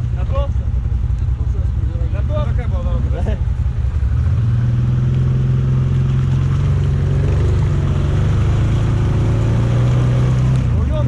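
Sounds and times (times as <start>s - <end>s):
quad bike engine at high revs: 5.1s - 10.7s.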